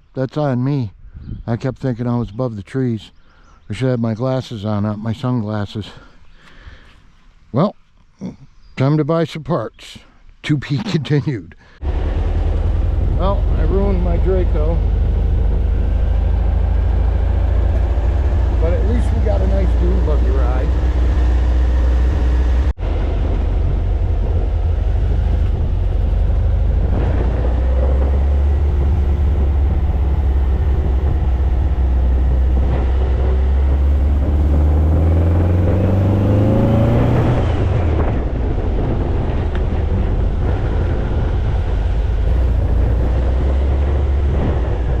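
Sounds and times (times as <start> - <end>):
dune buggy engine running: 11.8 - 45.0.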